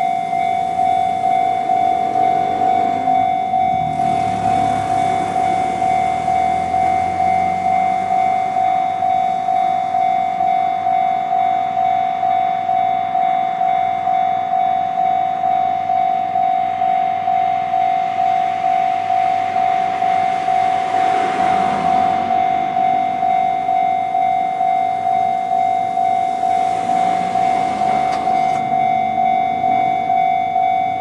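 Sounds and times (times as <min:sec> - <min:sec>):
level crossing warning bell: 0:00.0 - 0:31.0
train passing over crossing: 0:00.0 - 0:31.0.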